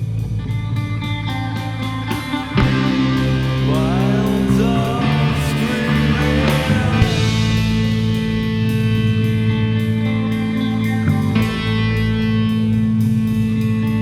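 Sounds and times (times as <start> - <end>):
rock band playing: 0.4 - 14.0
lead guitar bending notes: 0.5 - 14.0.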